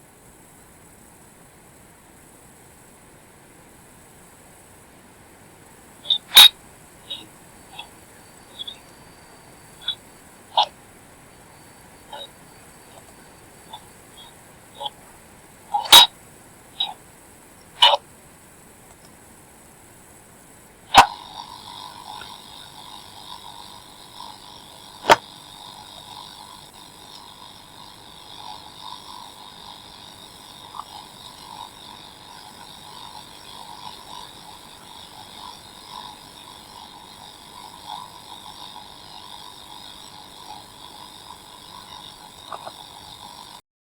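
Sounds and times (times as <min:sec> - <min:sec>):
crackling buzz: 0:00.0 - 0:43.6
sharp click: 0:15.7 - 0:16.1, 0:20.9 - 0:21.2, 0:25.0 - 0:25.3.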